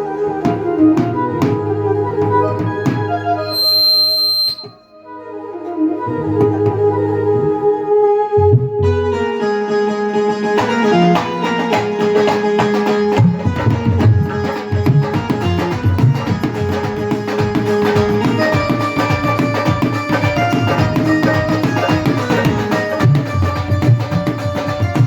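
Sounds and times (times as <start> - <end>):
held melody line: 0.0 - 25.0
hand drums playing: 10.6 - 25.0.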